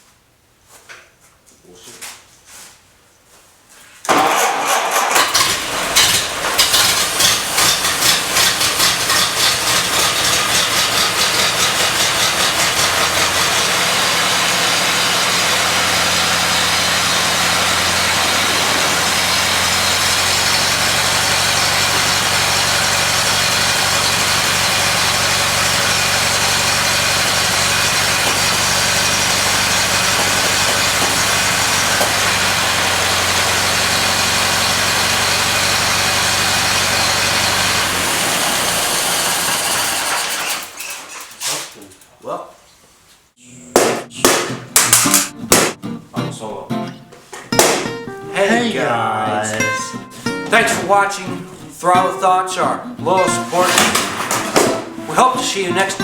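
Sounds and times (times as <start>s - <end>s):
car engine starting and idling: 4.1s - 42.1s, 53.1s - 56.0s.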